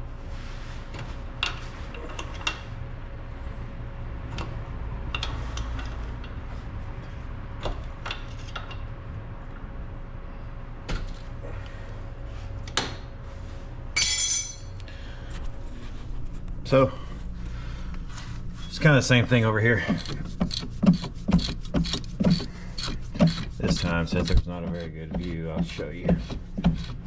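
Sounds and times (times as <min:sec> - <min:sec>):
steady low hum: 0:13.2 - 0:27.0
ringing metallic clink: 0:14.0 - 0:14.8
hand tools clicking on metal parts: 0:19.9 - 0:27.0.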